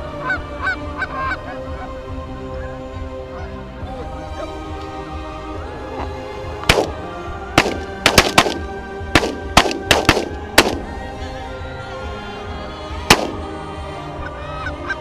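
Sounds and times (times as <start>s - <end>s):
background music: 0.0s - 15.0s
shotgun blasts: 6.7s - 11.2s, 13.1s - 13.6s.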